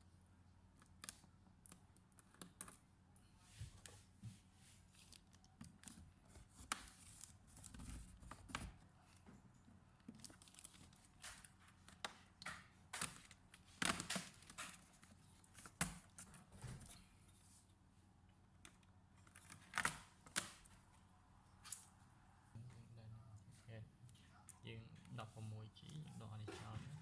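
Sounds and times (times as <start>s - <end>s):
clicks and taps handling laptop: 11.2s - 16.2s.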